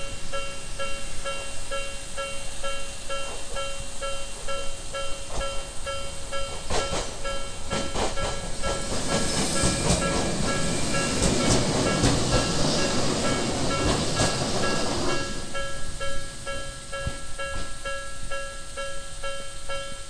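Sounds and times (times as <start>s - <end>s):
level crossing warning bell: 0.0s - 20.0s
train passing: 0.0s - 20.0s
wheels clacking over rail joints: 6.3s - 15.6s.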